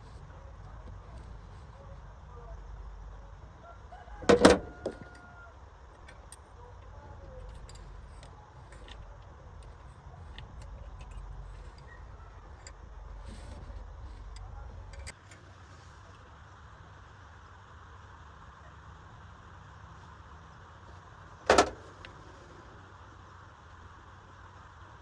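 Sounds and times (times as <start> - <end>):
low steady hum: 0.0 - 16.2.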